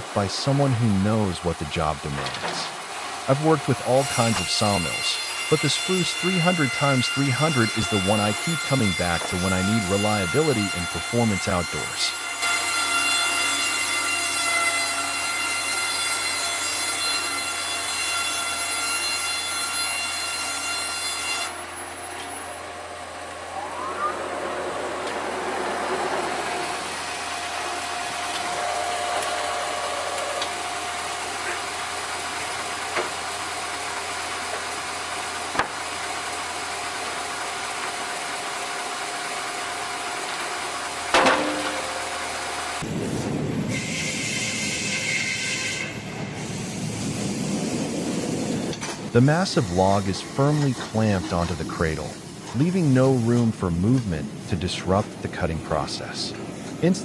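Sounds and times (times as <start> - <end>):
saw and motor high-pitched whine: 0.0 - 54.2
steady machine hum: 21.5 - 44.0.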